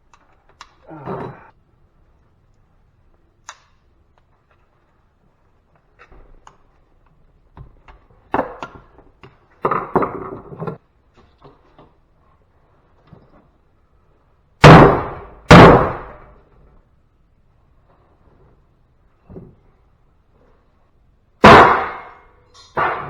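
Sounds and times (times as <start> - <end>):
sledgehammer blows ringing: 14.6 - 16.3, 21.4 - 23.0
metal scrap clattering: 21.4 - 23.0.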